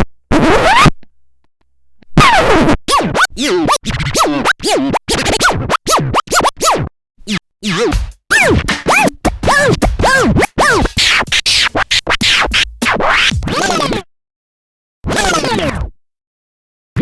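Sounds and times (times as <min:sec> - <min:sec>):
vinyl record scratching: 0:07.6 - 0:13.9.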